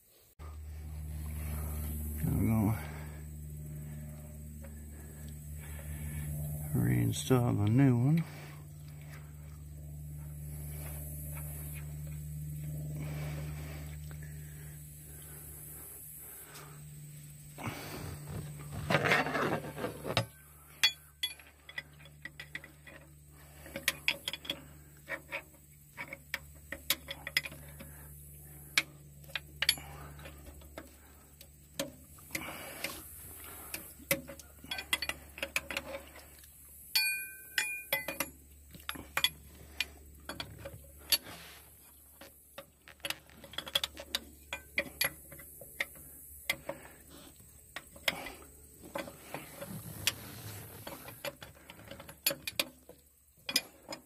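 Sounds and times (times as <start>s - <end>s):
low steady hum: 0.0s - 54.0s
metal tools clicking and clinking: 33.7s - 36.3s, 36.9s - 41.3s.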